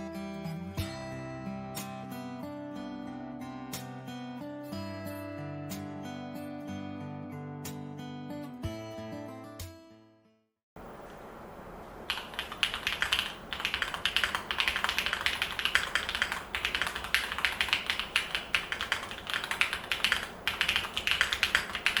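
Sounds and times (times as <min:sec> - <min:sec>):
mechanical keyboard typing: 0:12.1 - 0:22.0.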